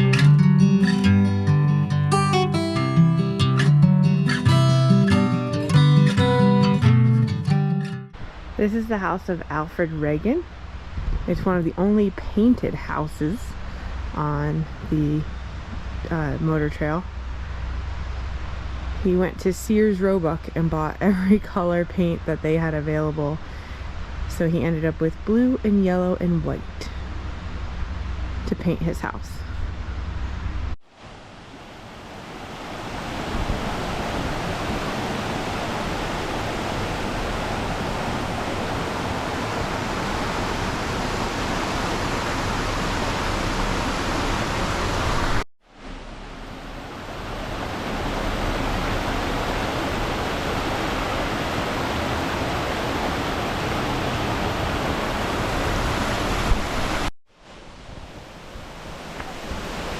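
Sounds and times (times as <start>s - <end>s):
creek water rushing: 30.9s - 59.9s.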